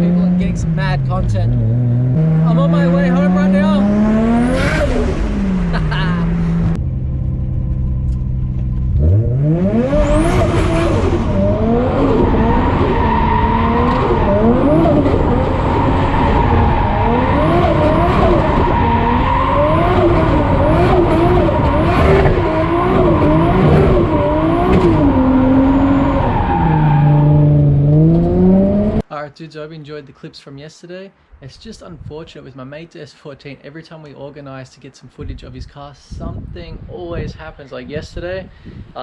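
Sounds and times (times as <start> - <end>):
car engine revving: 0.0 - 29.0.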